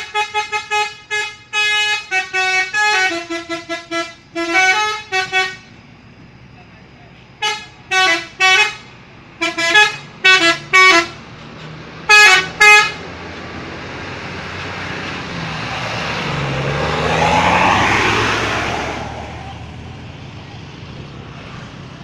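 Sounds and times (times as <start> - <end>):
musical air horn toots: 0.0 - 5.7
vehicle passing by: 13.0 - 22.0.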